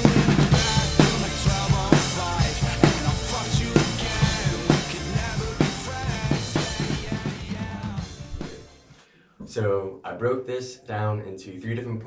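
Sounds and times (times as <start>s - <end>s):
drum kit playing: 0.0s - 8.9s
rock song: 0.0s - 9.0s.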